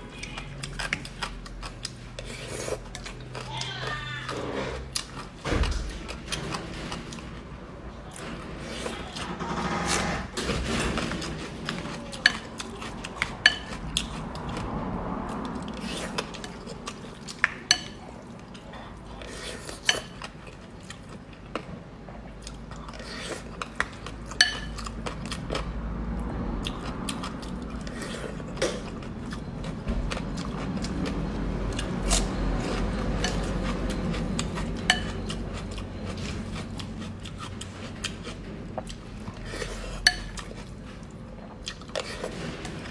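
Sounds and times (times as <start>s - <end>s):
utensils clinking against dish: 23.8s - 24.9s, 32.1s - 36.6s.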